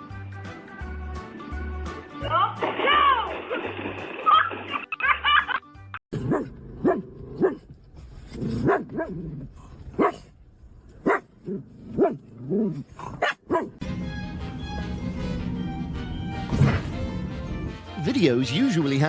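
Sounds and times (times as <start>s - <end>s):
dog barking: 6.2s - 7.6s, 8.5s - 9.2s, 10.0s - 10.3s, 11.0s - 12.2s, 13.2s - 13.8s.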